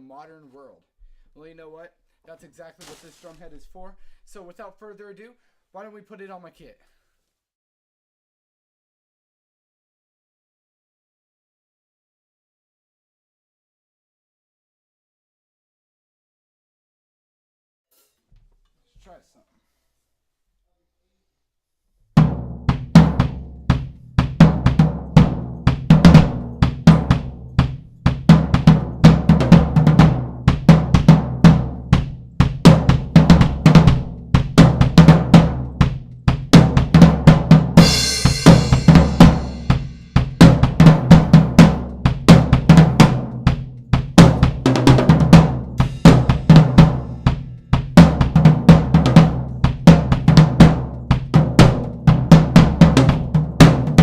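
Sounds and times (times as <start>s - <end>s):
drum kit beat with fills: 22.2s - 54.0s
cymbal crash: 37.8s - 40.4s.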